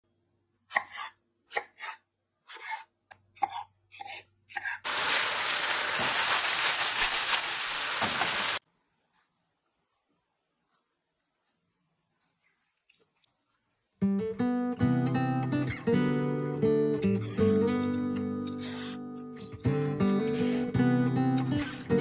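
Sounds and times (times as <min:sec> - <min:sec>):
knife cutting on board: 0:00.7 - 0:04.8
food sizzling in hot oil: 0:04.9 - 0:08.6.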